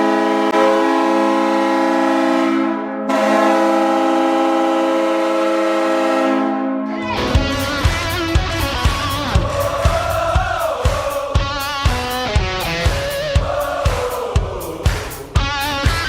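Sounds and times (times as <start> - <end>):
arena goal horn blasts: 0.0 - 8.8
goal song with drum beats: 7.2 - 16.0.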